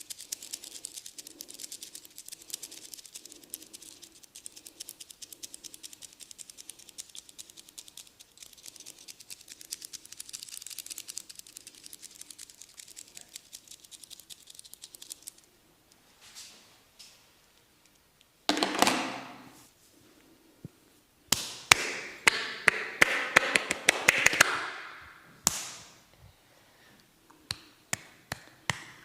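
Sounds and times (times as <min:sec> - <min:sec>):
hands tapping on head and hair: 0:21.3 - 0:24.7, 0:27.5 - 0:29.0.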